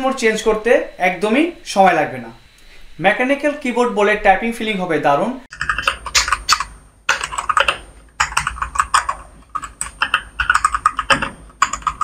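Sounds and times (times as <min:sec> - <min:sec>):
mechanical keyboard typing: 0:05.5 - 0:12.0.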